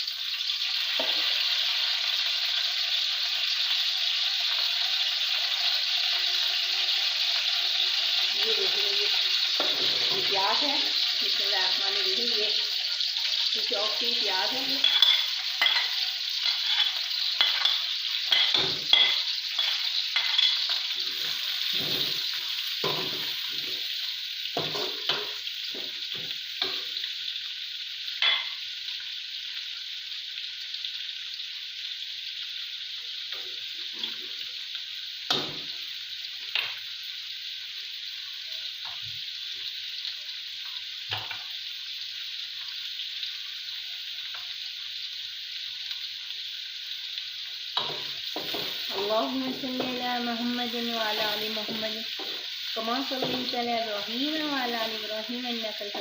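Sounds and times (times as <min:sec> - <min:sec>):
onions sizzling in hot oil: 0:00.0 - 0:56.0
spoon knocking and scraping pan: 0:09.5 - 0:10.6, 0:14.7 - 0:23.8, 0:24.6 - 0:26.9, 0:28.2 - 0:28.6, 0:35.3 - 0:35.7, 0:47.8 - 0:50.3, 0:51.0 - 0:53.6.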